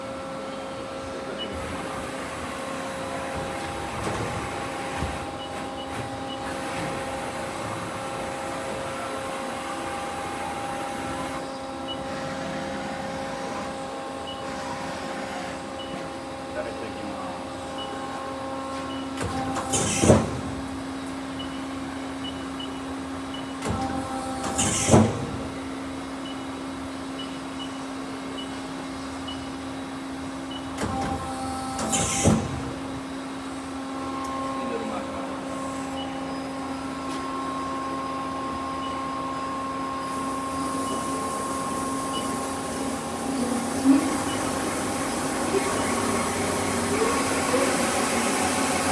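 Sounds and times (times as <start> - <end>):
lathe humming: 33.9 - 48.9.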